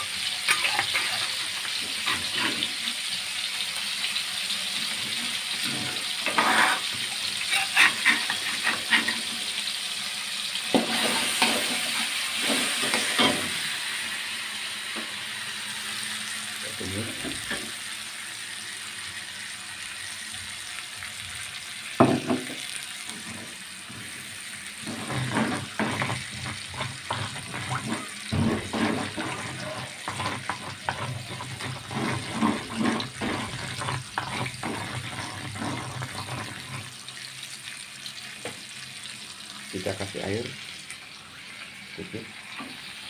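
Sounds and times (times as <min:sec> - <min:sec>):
paste sizzling in a pan: 0:00.0 - 0:43.0
stirring and scraping in a pan: 0:00.4 - 0:03.2, 0:04.7 - 0:09.6, 0:10.7 - 0:13.6, 0:22.4 - 0:37.3.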